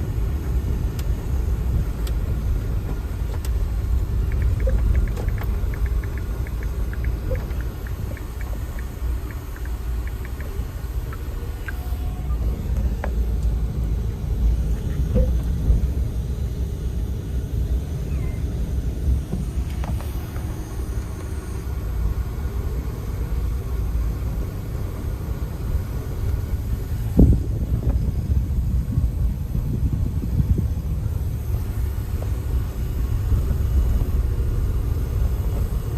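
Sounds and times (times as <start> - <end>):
vehicle motor rumble: 0.0 - 35.9
faint clicks: 4.3 - 11.8.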